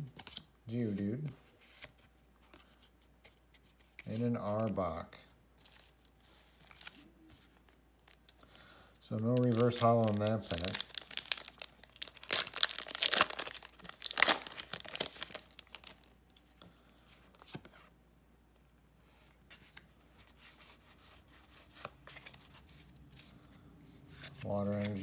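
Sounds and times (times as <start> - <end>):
foil pack tearing and crinkling: 9.4 - 16.0.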